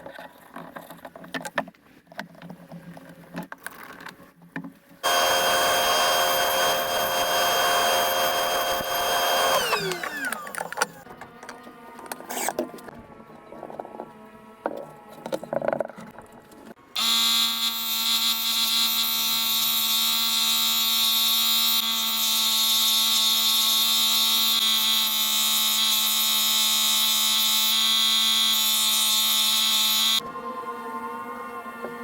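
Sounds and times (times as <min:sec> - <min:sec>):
electric tool high-pitched whine: 0:05.0 - 0:11.0, 0:17.0 - 0:32.0.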